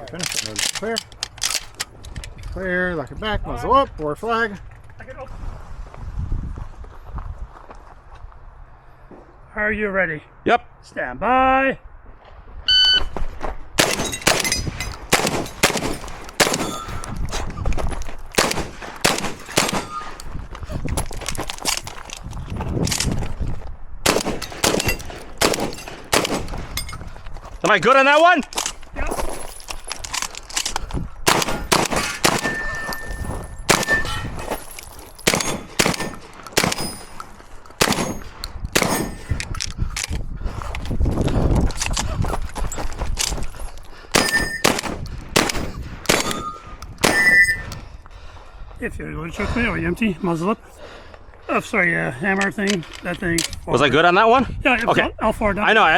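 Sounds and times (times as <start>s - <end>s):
shot timer beep: 12.7s - 13.1s
shotgun shots: 13.8s - 17.0s, 18.4s - 20.2s, 24.0s - 26.8s, 31.2s - 32.8s, 33.7s - 34.2s, 35.2s - 37.1s, 37.8s - 39.2s, 44.1s - 47.4s
bullets clanging on steel targets: 13.8s - 17.2s, 18.4s - 20.3s, 24.1s - 27.1s, 31.3s - 39.5s, 44.1s - 47.7s.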